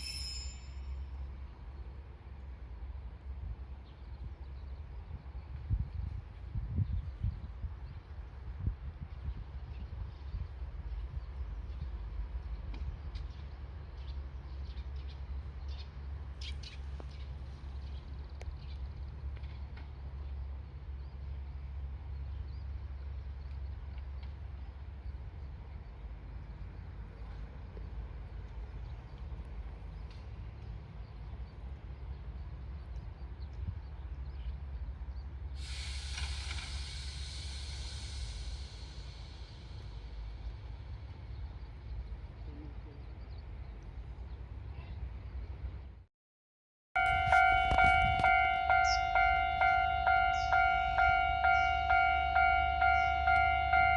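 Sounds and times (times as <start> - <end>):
train low rumble: 0.0 - 46.1, 47.0 - 53.9
compressed air hiss: 35.6 - 40.4
birds chirping: 47.4 - 53.6.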